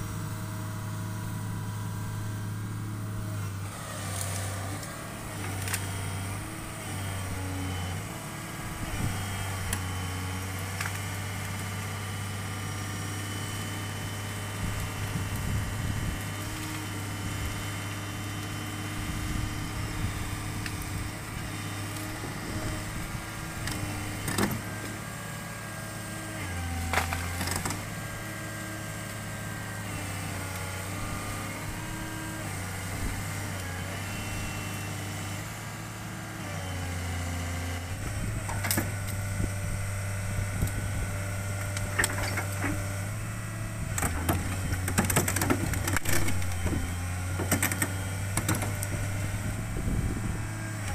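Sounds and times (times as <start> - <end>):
diesel engine running: 0.0 - 50.9
hydraulic whine: 0.0 - 50.9.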